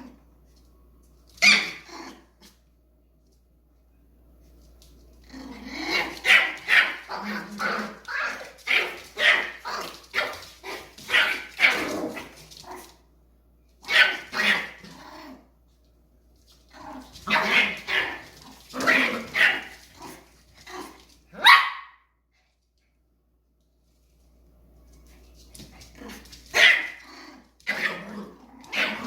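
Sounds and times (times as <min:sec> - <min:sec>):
dog barking: 0:06.2 - 0:07.0, 0:13.9 - 0:14.8, 0:21.4 - 0:22.0, 0:26.6 - 0:27.0.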